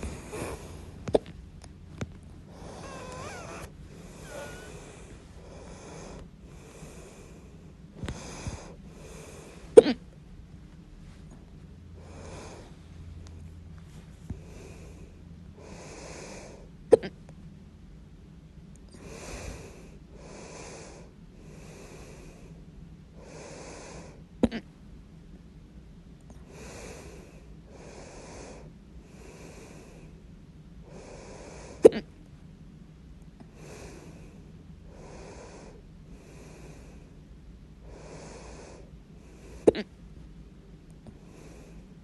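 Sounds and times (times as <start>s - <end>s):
steady breathing: 0.0s - 1.4s, 2.2s - 9.8s, 11.1s - 16.8s, 18.9s - 24.3s, 26.3s - 31.9s, 33.4s - 39.9s, 41.0s - 42.0s
person hiccuping: 9.8s - 10.0s, 24.4s - 24.7s, 31.9s - 32.1s, 39.7s - 39.9s.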